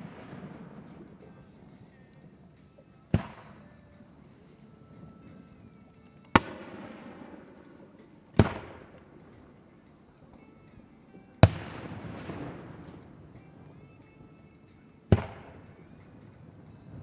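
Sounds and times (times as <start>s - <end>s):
fireworks bursting with rolling echo: 0.0s - 2.1s, 3.1s - 3.7s, 6.3s - 9.7s, 11.4s - 13.8s, 15.1s - 17.0s.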